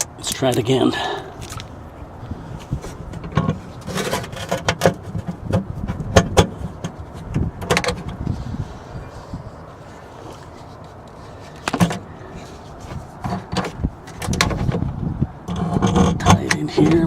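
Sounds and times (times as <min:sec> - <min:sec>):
metal parts being handled: 0:02.6 - 0:08.2.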